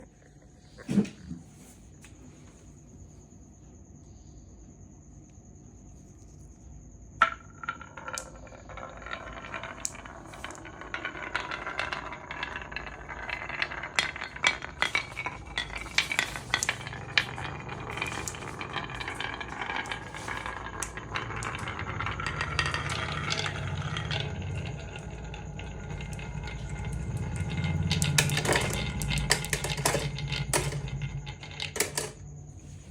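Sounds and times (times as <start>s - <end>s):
marbles rolling rumble: 7.1s - 32.9s
marbles clicking down a marble run: 7.3s - 32.2s.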